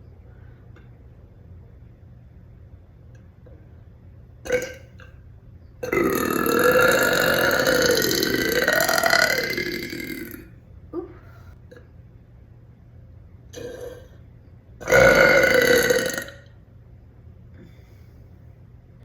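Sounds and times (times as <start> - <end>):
woman burping loudly: 4.5 - 5.1, 5.8 - 11.2, 13.6 - 14.1, 14.8 - 16.5.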